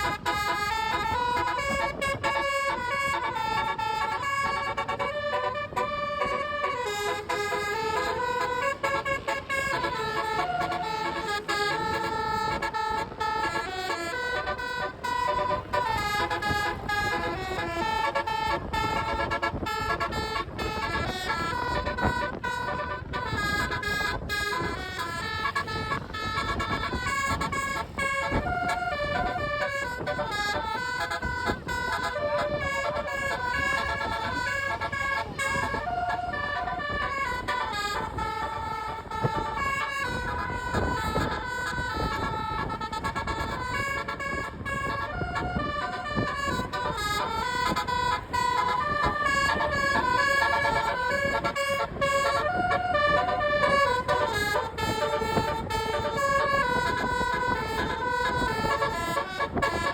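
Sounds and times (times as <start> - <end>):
musical vehicle horn tune: 0.0 - 59.9.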